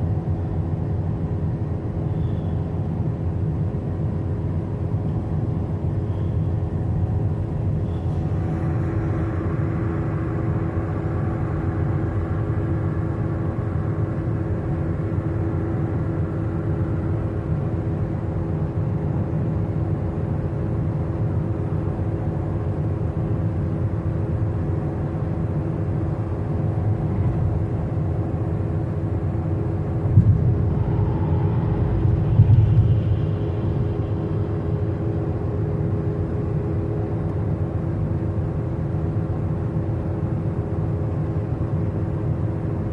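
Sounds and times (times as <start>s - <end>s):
car cabin road noise: 2.8s - 42.6s.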